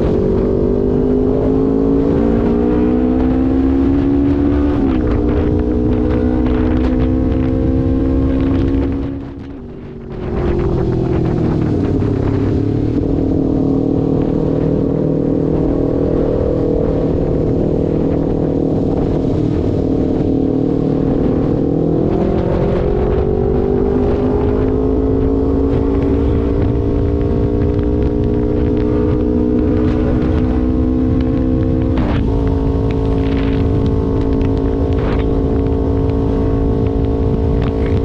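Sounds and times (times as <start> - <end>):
motorcycle engine running: 0.0 - 38.0.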